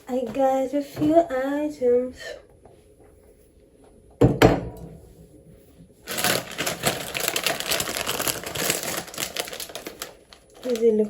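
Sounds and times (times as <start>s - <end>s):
plastic bag crinkling: 6.0s - 11.0s.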